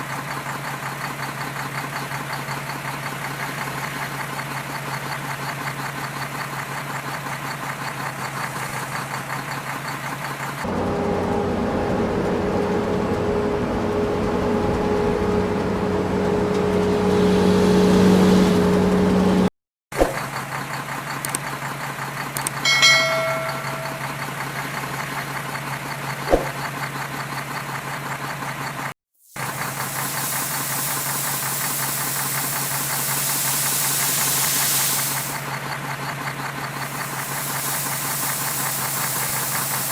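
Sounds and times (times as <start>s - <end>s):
heavy machinery engines running: 0.0s - 19.5s, 20.3s - 39.9s
loud engine with whine: 10.4s - 19.5s
short pitched tone: 22.7s - 24.4s.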